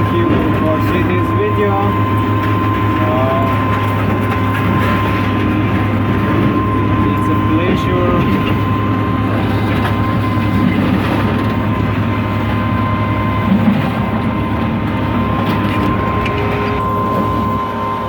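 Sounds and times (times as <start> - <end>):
high whine: 0.0 - 18.0
machine low drone: 0.0 - 18.0.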